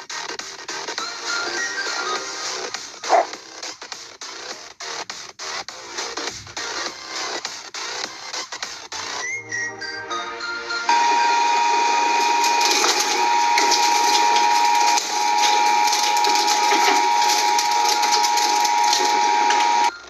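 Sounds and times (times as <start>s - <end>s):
high whine: 10.9s - 20.0s
shredding machine grinding: 10.9s - 20.0s.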